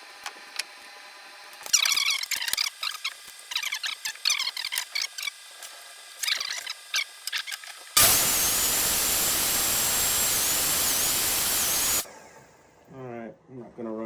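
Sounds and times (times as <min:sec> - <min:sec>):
power tool cutting wood: 0:08.0 - 0:12.1.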